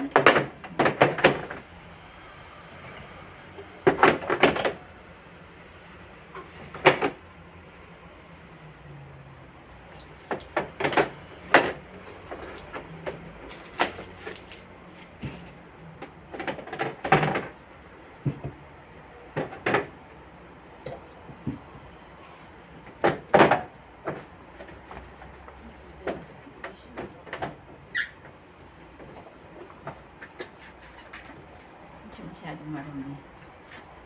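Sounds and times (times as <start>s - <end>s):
containers and fridge shelves clacking: 0.0s - 1.7s, 2.8s - 4.9s, 6.3s - 7.2s, 10.1s - 17.6s, 19.3s - 20.0s, 22.8s - 25.1s.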